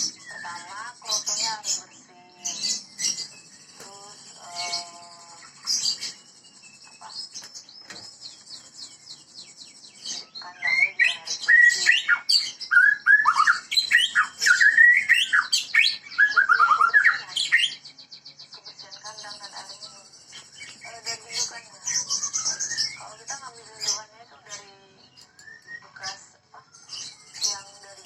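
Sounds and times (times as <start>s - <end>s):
bird singing whistled phrases: 10.0s - 17.8s, 22.0s - 23.0s, 25.3s - 26.0s.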